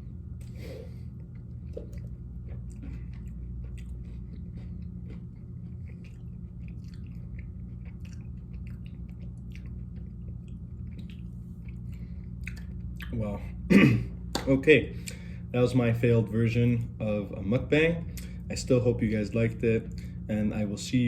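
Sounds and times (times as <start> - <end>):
person chewing crunchy bread: 0.1 - 13.3.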